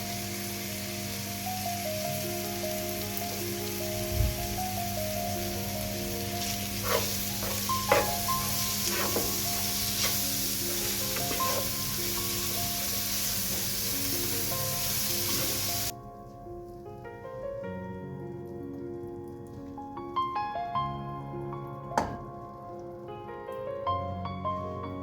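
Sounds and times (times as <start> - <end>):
food sizzling in a pan: 0.0 - 15.9
utensil stirring food: 6.2 - 15.9.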